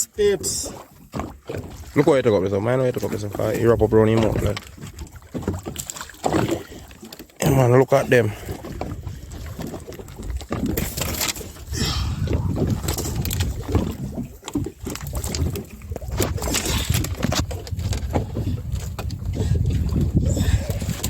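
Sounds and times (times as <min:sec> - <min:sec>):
water splashing against hull: 0:00.0 - 0:21.0
wind buffeting microphone: 0:03.1 - 0:05.8, 0:08.3 - 0:21.0.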